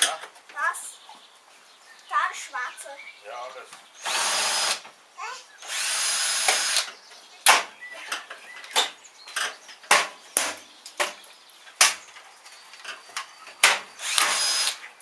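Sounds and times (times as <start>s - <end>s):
power drill running: 4.0s - 4.8s, 5.6s - 6.9s, 14.0s - 14.8s.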